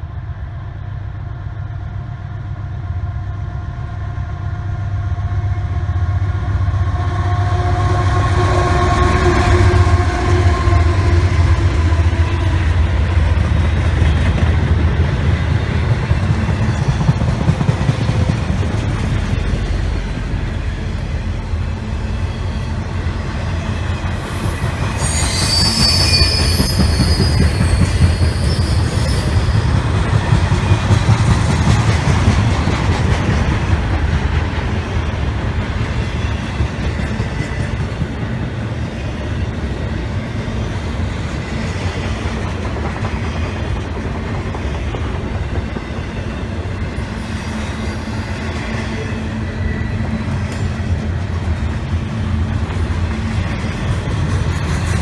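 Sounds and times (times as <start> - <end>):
freight train rumbling on rails: 0.0 - 55.0
wheel flanges squealing: 23.6 - 31.6.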